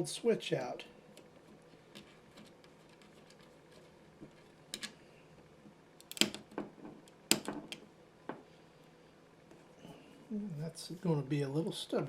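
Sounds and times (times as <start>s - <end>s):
screwdriver clicks and taps: 6.0s - 7.8s.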